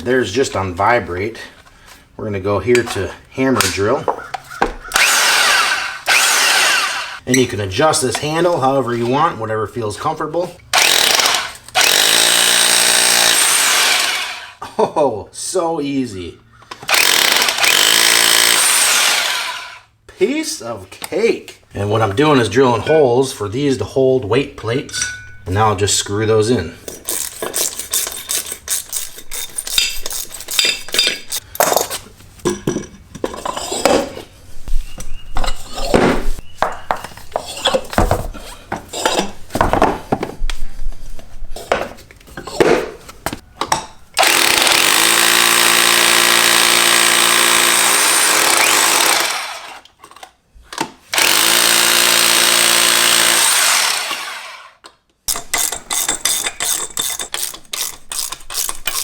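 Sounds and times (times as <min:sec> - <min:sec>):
power drill driving screws: 0:04.9 - 0:07.2, 0:10.8 - 0:14.6, 0:16.9 - 0:19.9, 0:44.2 - 0:49.9, 0:51.1 - 0:54.8
metallic hardware clattering: 0:24.8 - 0:25.5.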